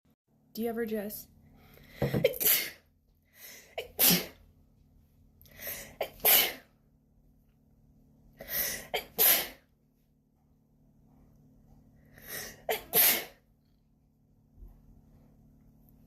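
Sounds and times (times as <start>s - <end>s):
woman sneezing: 2.2s - 2.8s, 12.7s - 13.4s.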